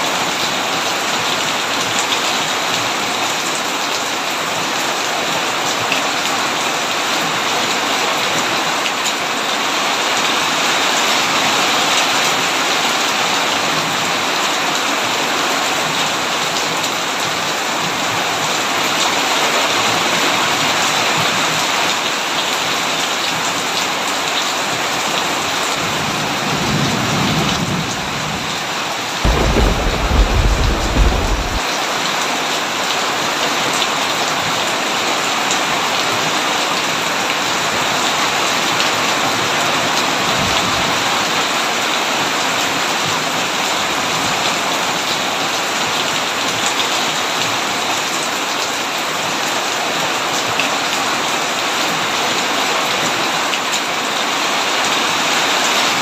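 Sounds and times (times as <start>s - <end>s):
heavy rain on a tin roof: 0.0s - 56.0s
loud thunderclap: 29.3s - 31.6s
rumble of thunder: 29.3s - 31.6s.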